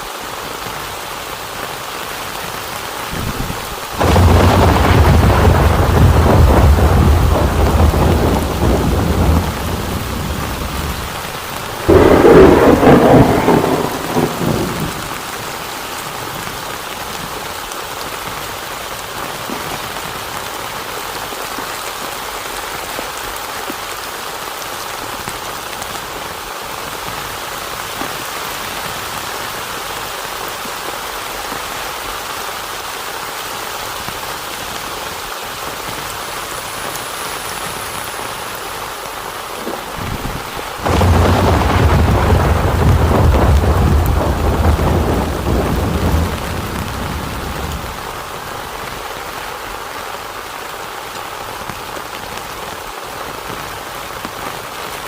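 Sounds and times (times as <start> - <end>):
heavy rain: 0.0 - 55.0
thunder rumbling: 3.1 - 16.5, 39.6 - 48.9.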